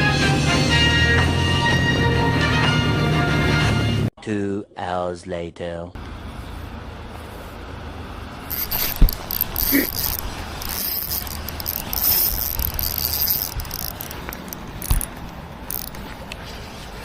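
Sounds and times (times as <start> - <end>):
fishing reel whirring and clicking: 8.5 - 16.1.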